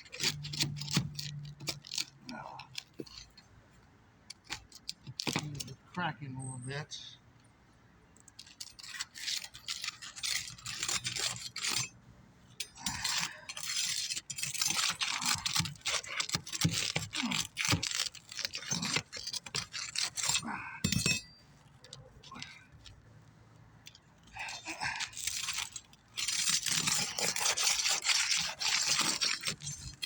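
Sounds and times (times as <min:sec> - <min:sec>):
pry bar scraping shingles: 0:00.0 - 0:05.9, 0:08.1 - 0:30.0
shingles cracking: 0:12.9 - 0:20.7, 0:24.4 - 0:30.0.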